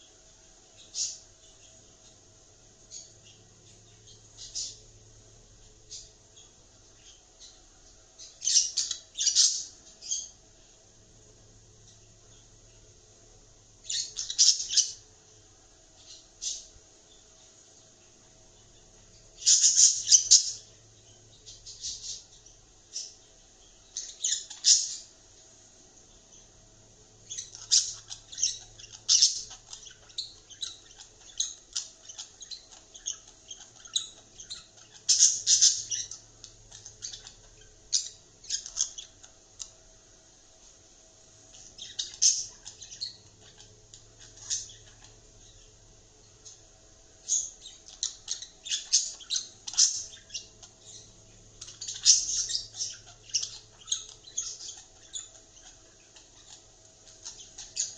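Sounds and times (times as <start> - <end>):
budgerigar chattering and squawking: 0.8 - 1.2, 8.3 - 10.4, 13.9 - 15.0, 19.4 - 20.7, 24.0 - 25.1, 27.3 - 39.4, 41.6 - 45.2, 47.2 - 57.9.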